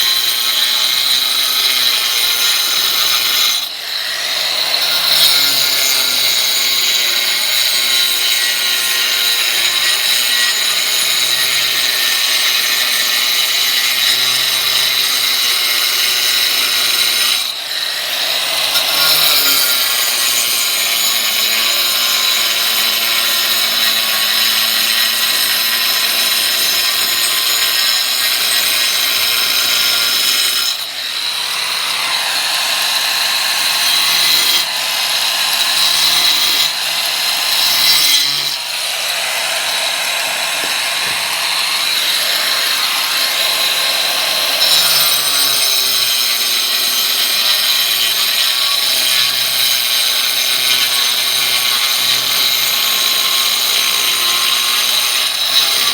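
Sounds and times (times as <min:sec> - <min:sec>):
power tool cutting with whine: 0:00.0 - 0:55.9.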